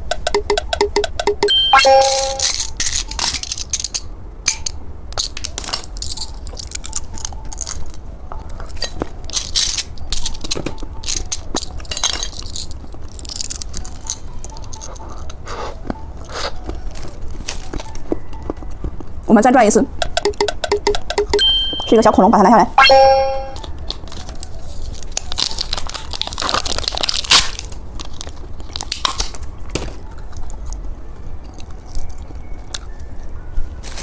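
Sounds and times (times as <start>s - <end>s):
electronic tones: 0.0s - 2.5s, 20.0s - 22.2s, 22.8s - 23.6s
candy and plastic toys handled: 1.8s - 20.4s, 23.4s - 34.0s.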